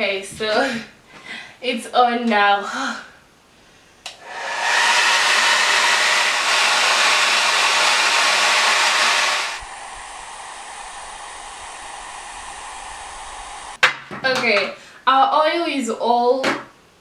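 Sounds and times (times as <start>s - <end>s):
hair dryer blowing air: 4.1s - 13.8s.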